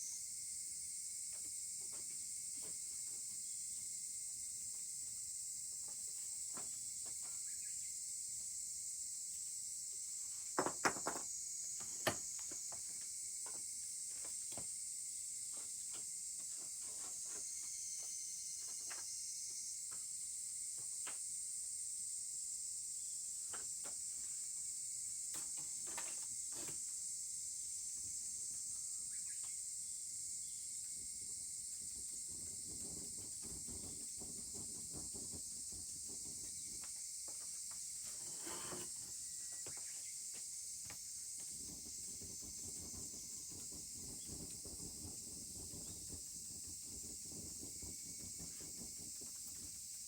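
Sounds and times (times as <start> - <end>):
insects chirring: 0.0 - 50.0
wood fire crackling: 30.6 - 39.2, 40.8 - 50.0
rustle: 30.8 - 47.1.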